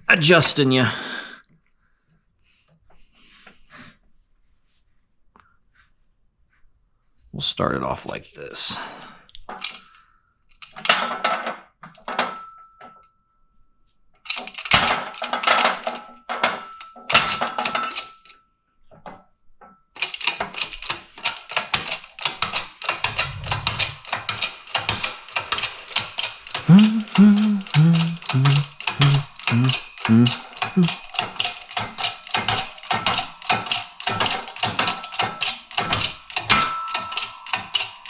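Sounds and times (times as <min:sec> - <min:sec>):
low creaking pulses: 0:23.1 - 0:24.0.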